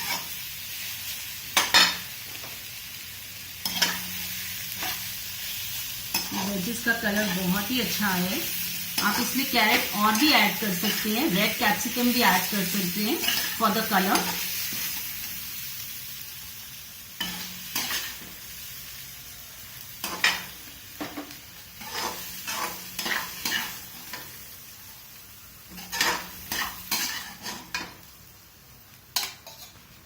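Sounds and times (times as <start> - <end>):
food sizzling: 0.0 - 30.0
spoon scraping a pan: 3.6 - 5.1, 6.1 - 11.5, 13.2 - 15.1, 17.2 - 18.3, 20.0 - 24.3, 25.7 - 28.1, 29.2 - 29.9.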